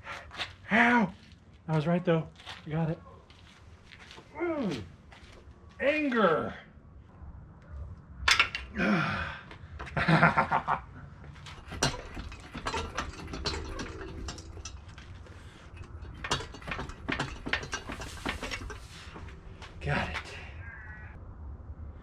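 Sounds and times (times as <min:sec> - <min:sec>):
metal tools clinking: 0:08.3 - 0:08.8, 0:11.4 - 0:20.3.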